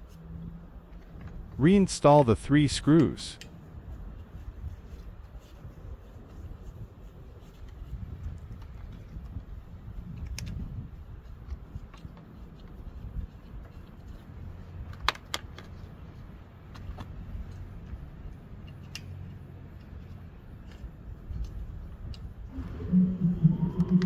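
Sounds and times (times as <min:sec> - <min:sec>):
low steady hum: 0:15.8 - 0:24.0
small metal clicks and taps: 0:16.7 - 0:22.3.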